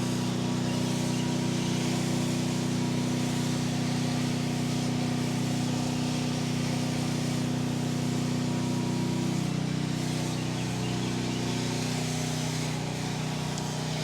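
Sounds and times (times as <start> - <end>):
spraying rig motor humming: 0.0 - 14.0.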